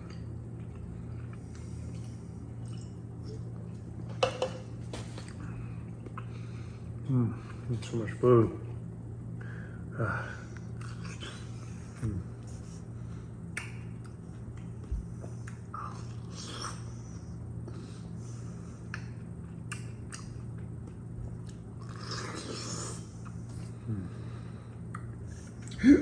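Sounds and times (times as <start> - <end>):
low electrical hum: 0.0 - 26.0
person chewing and eating: 10.6 - 12.9, 18.8 - 24.0
wet mouth clicks and smacks: 13.5 - 14.2, 18.9 - 20.4.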